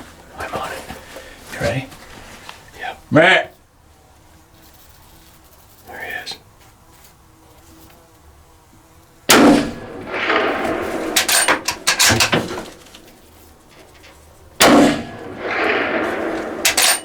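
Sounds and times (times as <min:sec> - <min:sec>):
rifle shots with echo: 0:09.3 - 0:13.9, 0:14.6 - 0:17.0
metallic clicks: 0:09.3 - 0:17.0.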